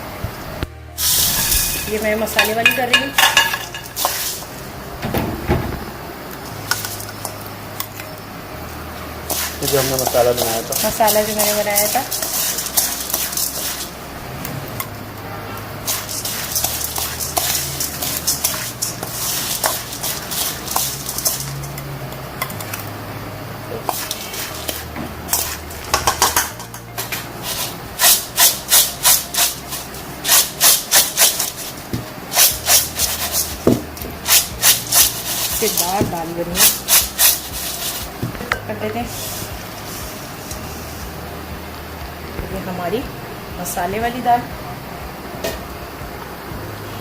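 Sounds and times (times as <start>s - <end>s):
low steady hum: 0.0s - 47.0s
lentils scraping in a bowl: 9.3s - 14.0s, 15.8s - 21.7s, 23.9s - 25.8s, 27.4s - 33.6s, 34.2s - 38.2s, 39.1s - 40.9s.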